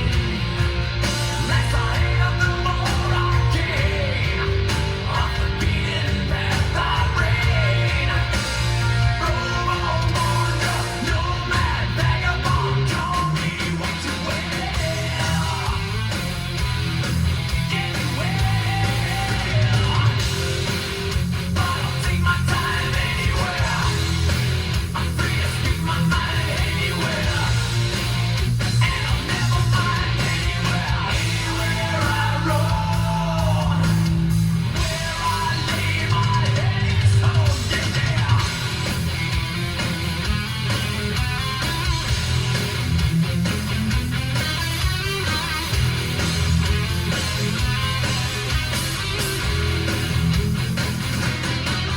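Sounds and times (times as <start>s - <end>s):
music with guitar and singing: 0.0s - 51.9s
rock song on car stereo: 0.0s - 51.9s.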